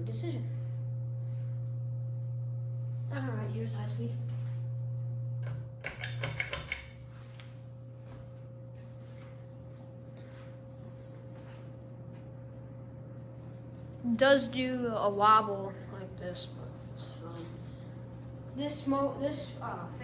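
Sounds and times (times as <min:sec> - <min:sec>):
ceiling fan humming: 0:00.0 - 0:20.0
pull-chain switch clicks and rattles: 0:05.4 - 0:07.0.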